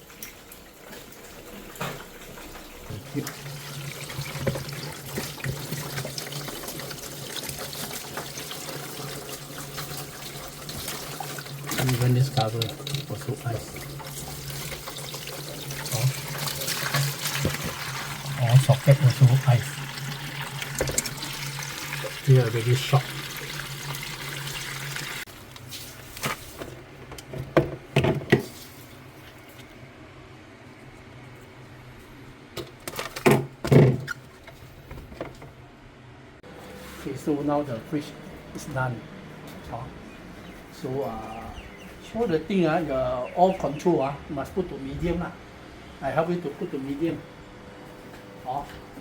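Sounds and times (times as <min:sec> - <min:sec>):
water trickling over ice: 0:00.0 - 0:26.2.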